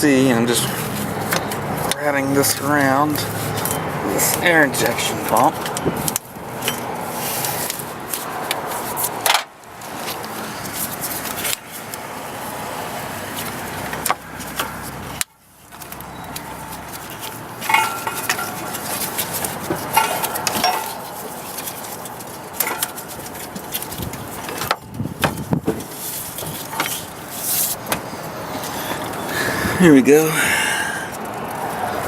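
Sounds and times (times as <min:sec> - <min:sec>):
rubber belt rubbing and scraping: 0:00.3 - 0:30.1
short squeaks: 0:28.6 - 0:29.4.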